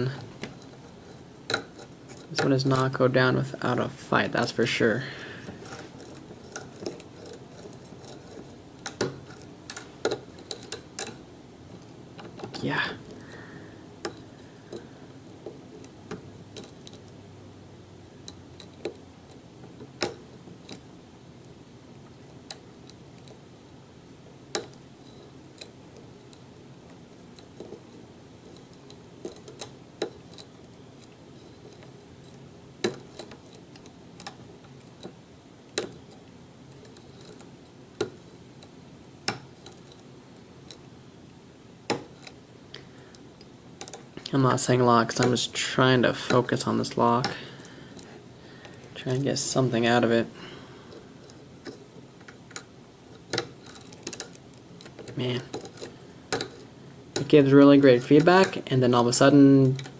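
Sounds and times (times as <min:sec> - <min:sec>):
lock pick clicking on lock pins: 0:50.9 - 0:56.6.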